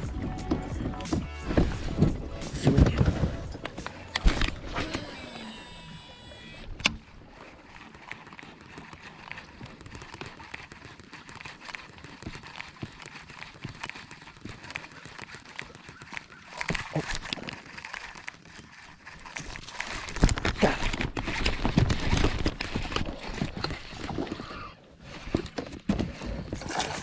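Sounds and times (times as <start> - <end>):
kayak pedal drive knocking: 0.0 - 7.2.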